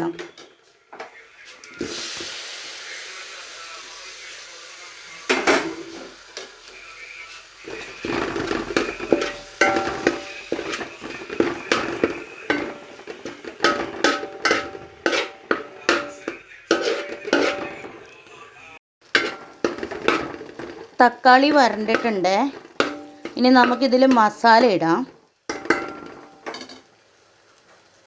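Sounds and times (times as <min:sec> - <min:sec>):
spoon clinking against pot: 0:07.7 - 0:18.0, 0:21.4 - 0:24.8, 0:25.5 - 0:26.8.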